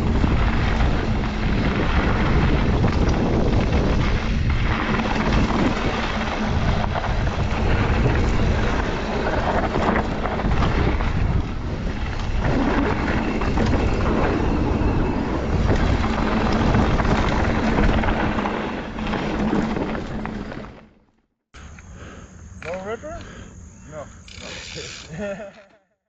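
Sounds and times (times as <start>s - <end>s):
wind buffeting microphone: 0.0s - 19.1s
bike rattling: 0.0s - 21.0s, 24.1s - 25.5s
tyres rumbling over dirt: 0.0s - 21.0s.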